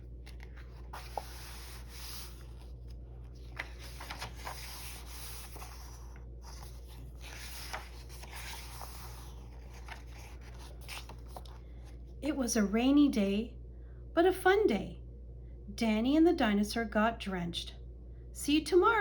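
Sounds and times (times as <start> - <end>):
paper pages rustling: 0.0 - 12.1
steady low hum: 0.0 - 19.0.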